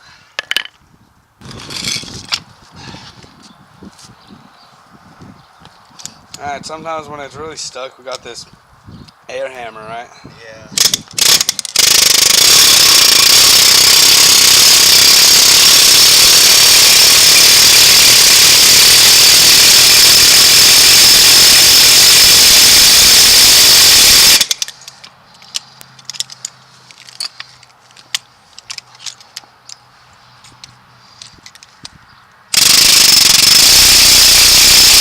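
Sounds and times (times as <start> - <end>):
pneumatic air hammer hammering: 10.8 - 24.9, 32.5 - 35.0.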